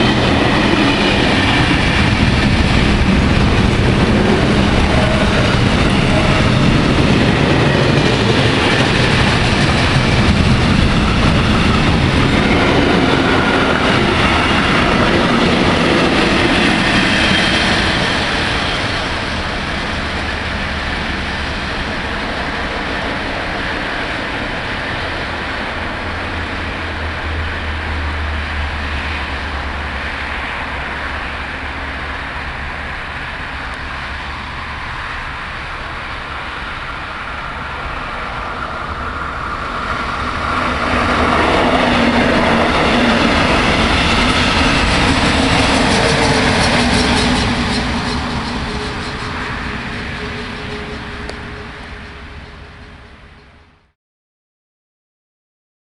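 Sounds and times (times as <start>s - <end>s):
train rumbling: 0.0s - 54.0s.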